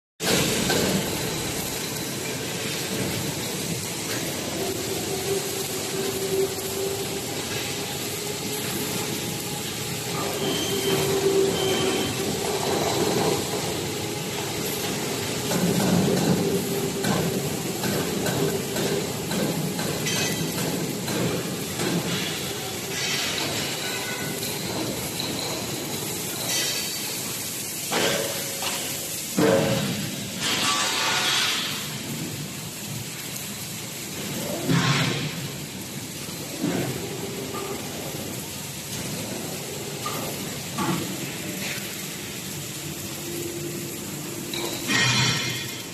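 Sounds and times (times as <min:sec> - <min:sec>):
machinery droning hum: 0:00.3 - 0:26.4.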